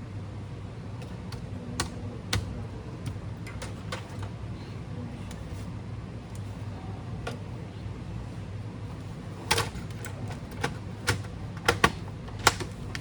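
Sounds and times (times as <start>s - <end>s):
steady low hum: 0.0s - 13.0s
clicks and taps on laptop parts: 9.5s - 13.0s.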